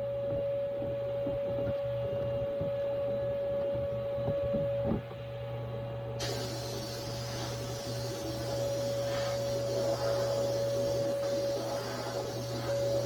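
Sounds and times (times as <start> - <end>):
steady electrical hum: 0.0 - 13.0
hiss: 6.2 - 13.0.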